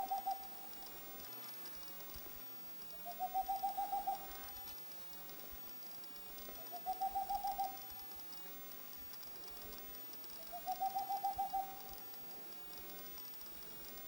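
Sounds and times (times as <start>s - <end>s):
owl hooting: 0.0s - 0.6s, 3.0s - 4.3s, 6.6s - 7.8s, 10.5s - 11.9s.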